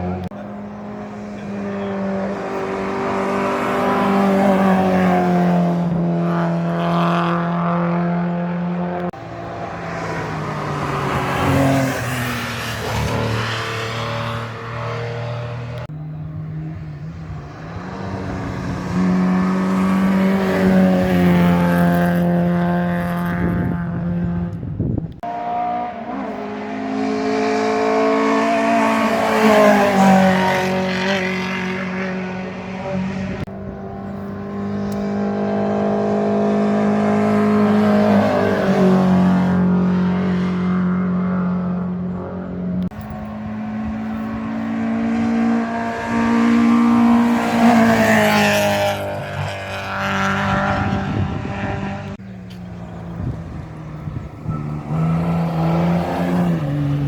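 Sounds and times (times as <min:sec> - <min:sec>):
racing cars passing at full throttle: 0:00.0 - 0:57.0.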